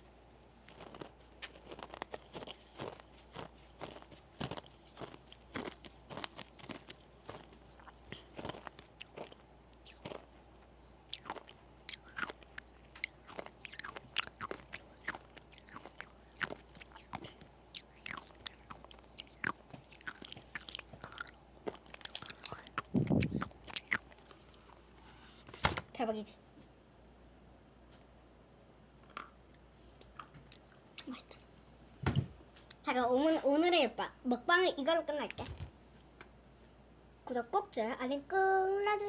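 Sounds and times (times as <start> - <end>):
hard candies being crunched: 0.6 - 10.3, 11.1 - 24.2.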